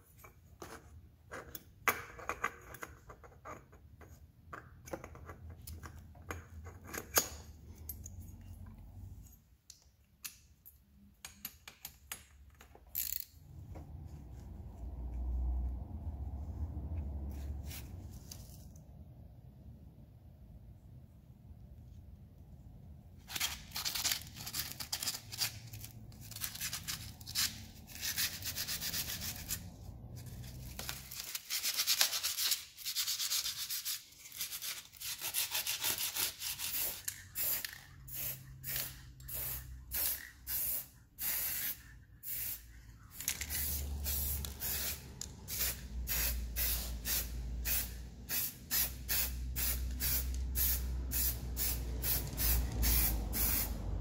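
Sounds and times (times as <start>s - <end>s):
hand sanding with sandpaper: 26.5s - 29.7s, 31.1s - 39.9s.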